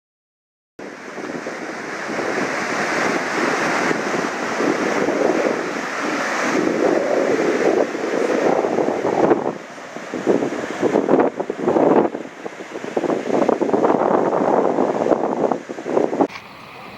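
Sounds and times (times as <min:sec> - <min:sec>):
water rushing: 0:00.8 - 0:13.5, 0:16.2 - 0:16.9
wind buffeting microphone: 0:00.8 - 0:16.9.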